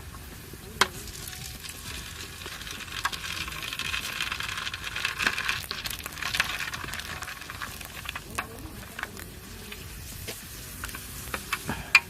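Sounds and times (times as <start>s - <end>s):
crackers sizzling in hot oil: 0.0s - 12.0s.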